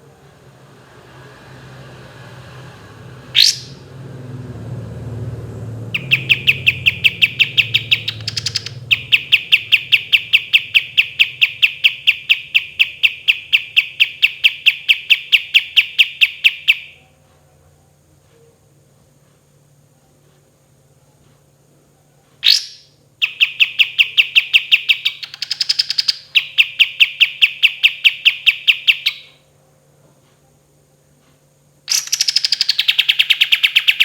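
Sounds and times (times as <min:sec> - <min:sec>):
songbird whistling and trilling: 0:03.4 - 0:03.8, 0:05.9 - 0:17.0, 0:22.4 - 0:29.4, 0:31.9 - 0:34.0.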